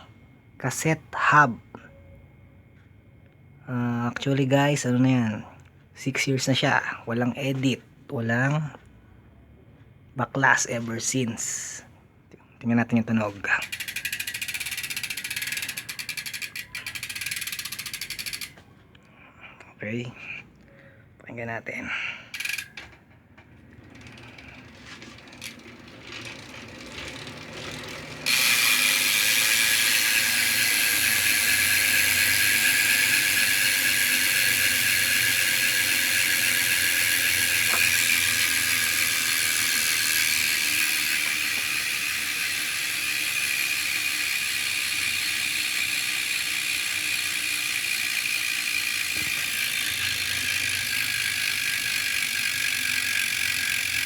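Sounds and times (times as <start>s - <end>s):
bicycle hub freewheel clicking: 13.4s - 18.6s, 22.2s - 54.0s.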